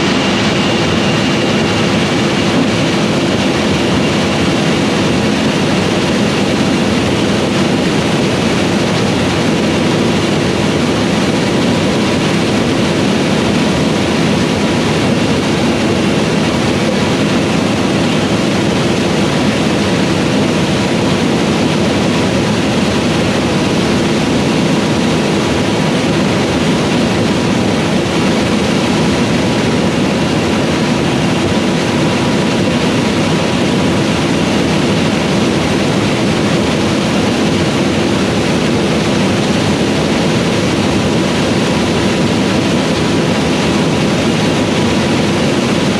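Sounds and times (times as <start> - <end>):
machine whining tones: 0.0 - 7.4
combine harvester drone: 0.0 - 45.9.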